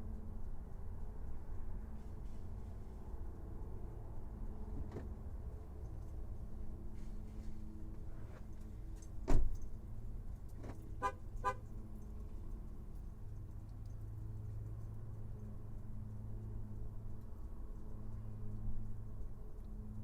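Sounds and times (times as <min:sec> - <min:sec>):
low rumble of engines: 0:00.0 - 0:20.0
car door shutting: 0:09.2 - 0:09.6
car horn chirps: 0:11.0 - 0:11.7.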